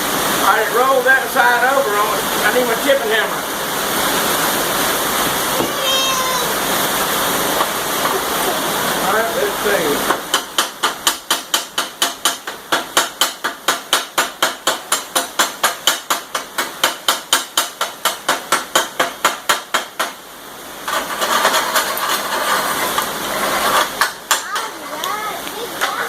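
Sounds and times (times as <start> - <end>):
hammer striking metal: 10.1 - 20.2.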